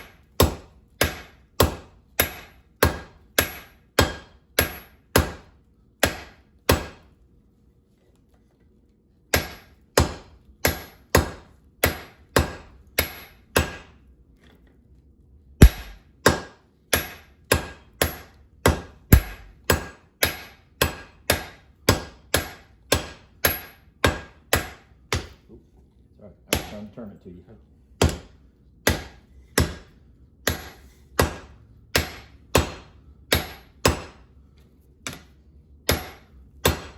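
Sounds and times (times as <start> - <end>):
hammer striking steel on anvil: 0.0 - 5.4, 9.3 - 13.9, 15.6 - 25.3, 28.0 - 34.2, 35.9 - 36.9.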